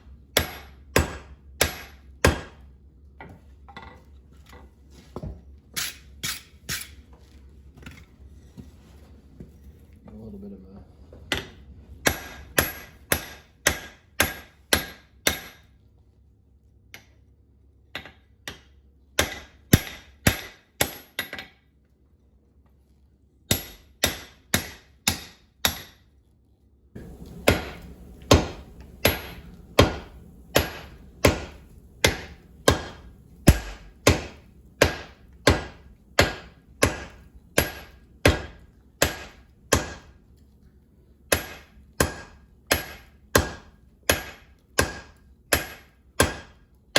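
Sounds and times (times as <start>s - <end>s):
hammer striking steel on anvil: 0.4s - 2.6s, 11.3s - 15.7s, 18.0s - 21.6s, 23.5s - 26.0s, 27.0s - 40.2s, 41.3s - 46.6s.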